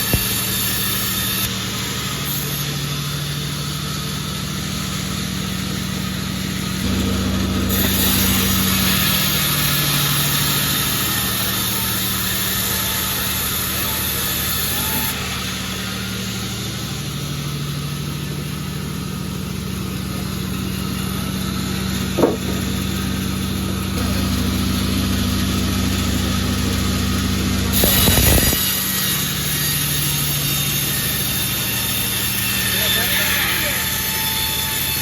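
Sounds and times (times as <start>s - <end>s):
loud rasping burst: 0.0s - 35.0s
sawmill engine humming: 0.0s - 35.0s
sharp knock: 22.2s - 22.8s.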